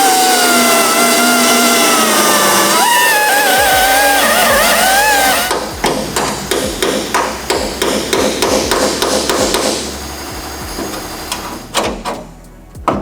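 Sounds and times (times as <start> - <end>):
wavering whine: 0.0 - 7.8
hammer on sheet metal: 4.6 - 9.9.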